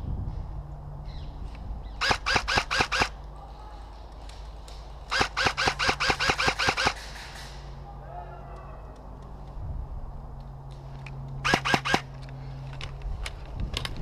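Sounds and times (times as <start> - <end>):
airsoft rifle firing: 2.0 - 3.2, 5.1 - 7.8, 11.4 - 12.1.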